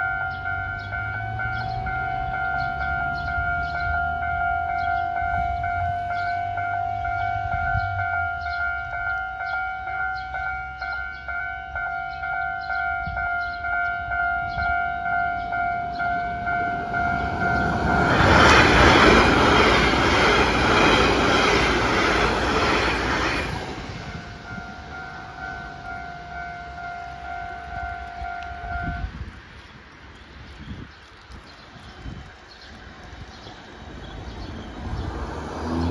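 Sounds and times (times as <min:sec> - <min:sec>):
level crossing warning bell: 0:00.0 - 0:22.7, 0:23.7 - 0:29.2
electric train rushing past: 0:00.0 - 0:29.6, 0:32.2 - 0:35.9.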